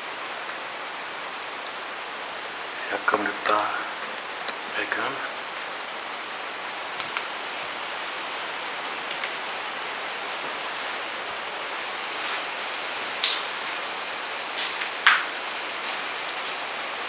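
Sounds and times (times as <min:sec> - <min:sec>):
steady hiss: 0:00.0 - 0:17.0.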